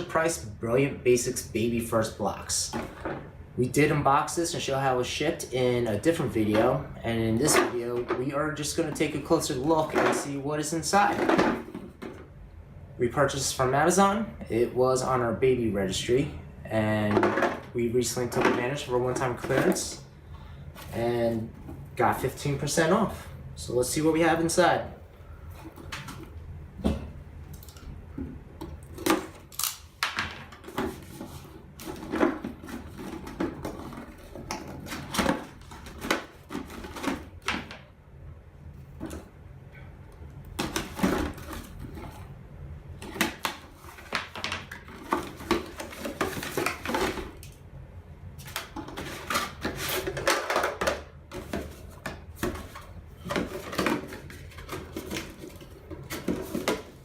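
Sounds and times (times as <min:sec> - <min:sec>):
packaging rustling: 0:48.4 - 0:57.0.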